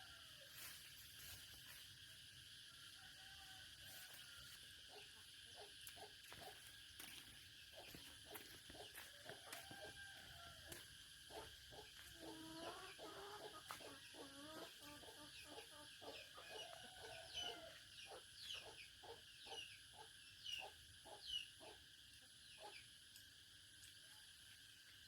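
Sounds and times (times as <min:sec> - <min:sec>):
chickens clucking: 0:10.6 - 0:21.8.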